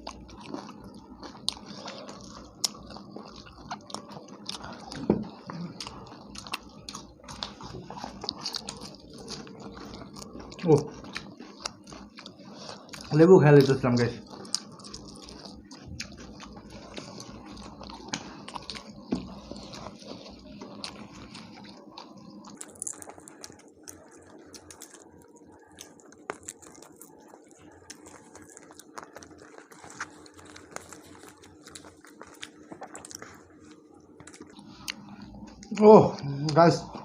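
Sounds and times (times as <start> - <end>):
faint steady hum: 0.0 - 37.0
people chewing and eating: 0.0 - 37.0.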